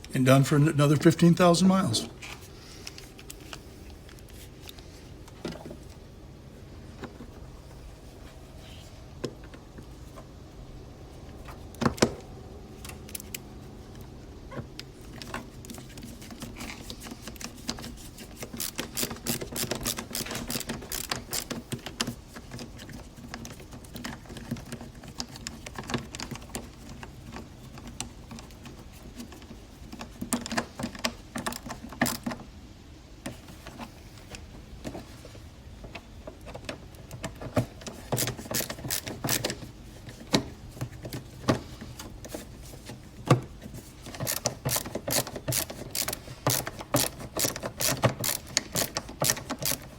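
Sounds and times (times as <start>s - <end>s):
screwdriver clicking on plastic: 37.1s - 39.6s, 44.1s - 49.9s.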